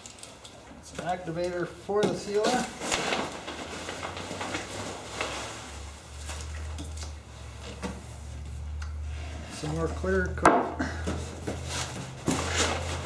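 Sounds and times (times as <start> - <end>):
rummaging in packing peanuts: 0.0 - 7.5, 10.8 - 13.0.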